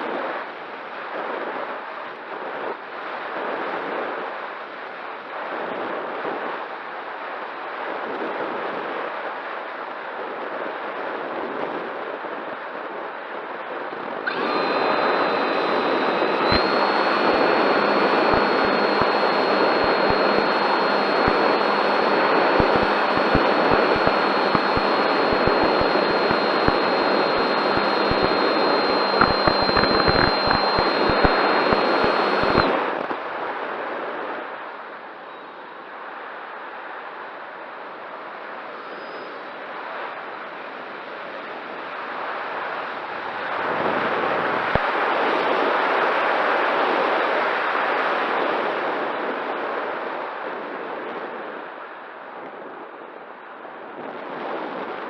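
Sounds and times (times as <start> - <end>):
steady high-pitched whine: 0.0 - 55.0
crackling buffets: 14.3 - 33.2.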